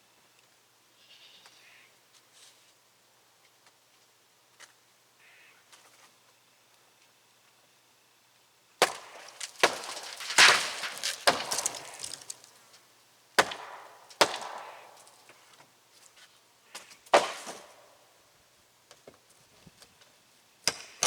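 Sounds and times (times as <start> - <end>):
wooden boards cracking and splintering: 8.8 - 12.5, 13.4 - 15.3.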